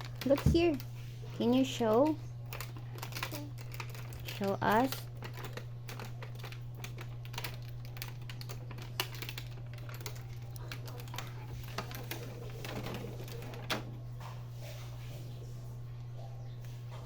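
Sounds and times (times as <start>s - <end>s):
plastic parts clicking: 1.5s - 13.9s.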